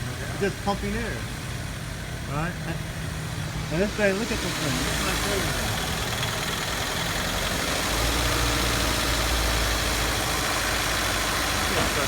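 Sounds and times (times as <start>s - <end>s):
car engine misfiring: 3.0s - 12.0s.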